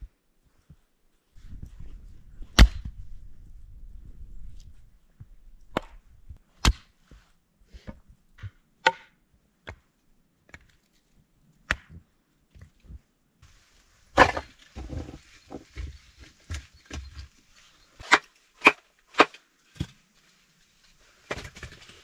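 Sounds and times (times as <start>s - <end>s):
firewood chopping strikes: 2.6s - 3.0s, 6.6s - 6.9s, 8.4s - 9.1s, 14.2s - 15.6s, 18.0s - 19.9s.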